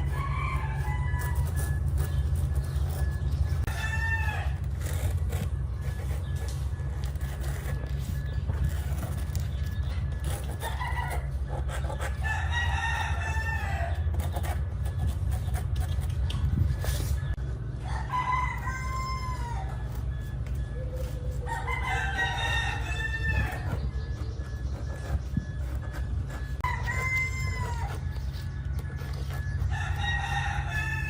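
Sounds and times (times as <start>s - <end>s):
rooster crowing: 0.0s - 2.1s, 3.7s - 5.0s, 10.6s - 14.5s, 17.8s - 20.4s, 21.0s - 24.4s, 26.4s - 31.0s
steady low hum: 0.0s - 31.0s.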